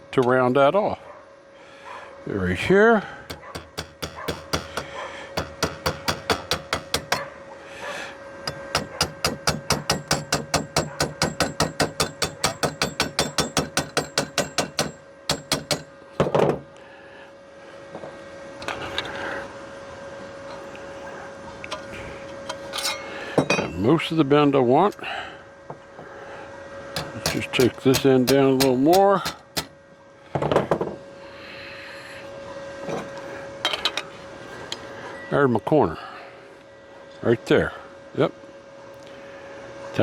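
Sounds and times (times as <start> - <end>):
heavier hammer knock: 3.3 - 7.2, 27.0 - 29.7
hammer tapping sheet steel: 3.3 - 7.3, 8.4 - 15.9, 27.0 - 29.8.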